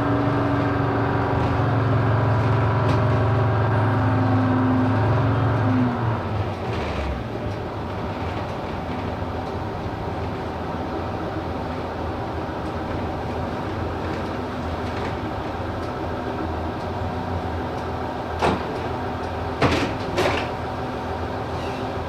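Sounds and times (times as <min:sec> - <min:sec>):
bus engine droning: 0:00.0 - 0:22.0.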